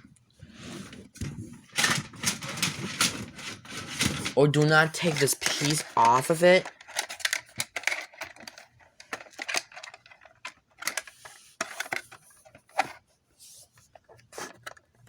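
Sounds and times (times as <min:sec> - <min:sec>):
plastic housing clicking and rattling: 0:05.0 - 0:13.0.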